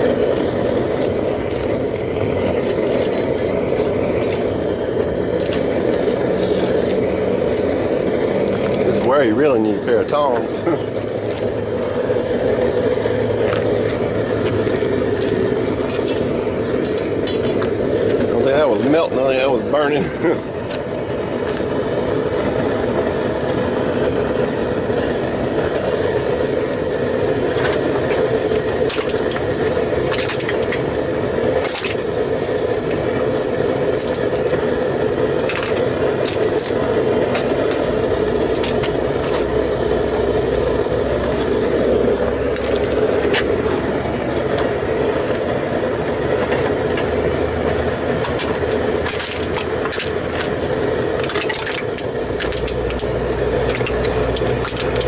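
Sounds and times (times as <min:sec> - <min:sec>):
sharp clicks and crackles: 0:00.0 - 0:19.6, 0:25.6 - 0:45.3, 0:46.3 - 0:55.0
gas burner rushing: 0:00.0 - 0:55.0.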